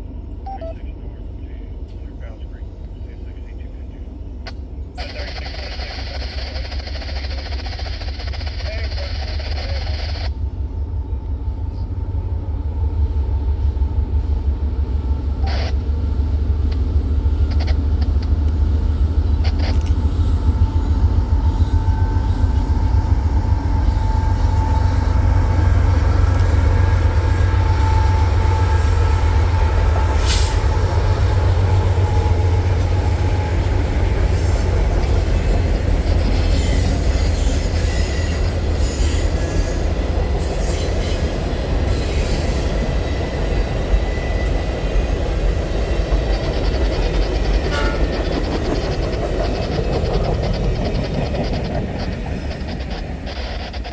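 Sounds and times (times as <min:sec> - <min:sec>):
train passing deep rumble: 0:00.0 - 0:53.9
wheels clicking on rails: 0:45.2 - 0:53.9.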